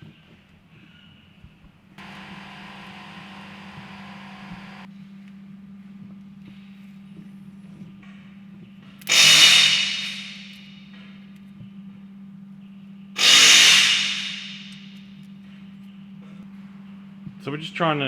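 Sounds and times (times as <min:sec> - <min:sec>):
steady low hum: 0:02.0 - 0:17.4
loud hissing blasts: 0:09.1 - 0:10.7, 0:13.2 - 0:14.9.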